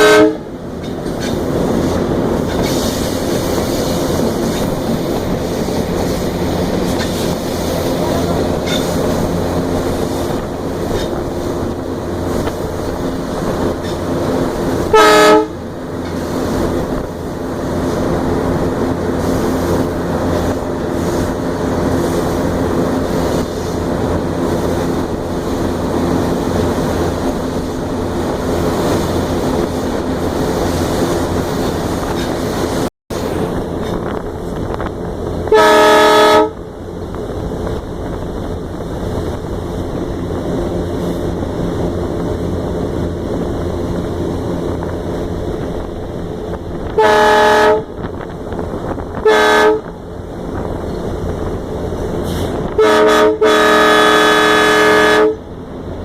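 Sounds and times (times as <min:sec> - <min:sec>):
locomotive horn blasts: 0:00.0 - 0:00.6, 0:14.7 - 0:15.7, 0:35.4 - 0:36.6, 0:46.9 - 0:48.0, 0:49.2 - 0:49.9, 0:52.5 - 0:55.5
diesel locomotive engine running: 0:00.0 - 0:56.0.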